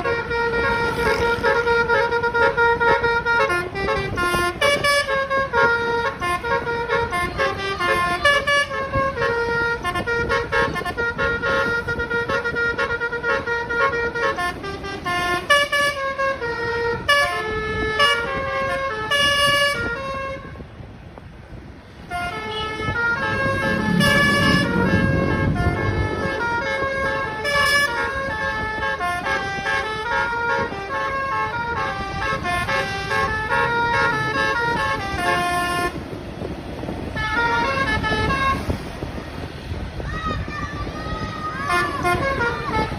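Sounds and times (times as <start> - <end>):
bus air horn melody: 0.0 - 20.9, 21.6 - 39.7, 41.5 - 42.9
low rumble: 23.2 - 26.6.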